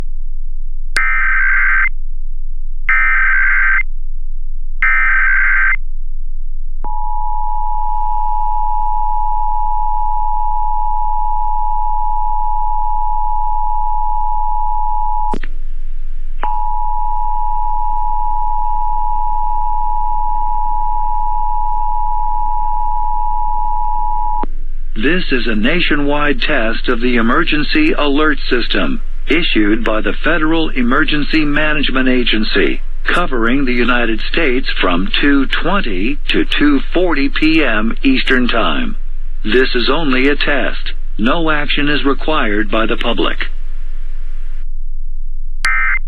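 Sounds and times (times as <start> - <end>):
data tone bursts: 1.0 - 1.9, 2.9 - 3.8, 4.8 - 5.8, 16.4 - 43.4, 45.6 - 46.0
two-tone attention signal: 45.7 - 46.0.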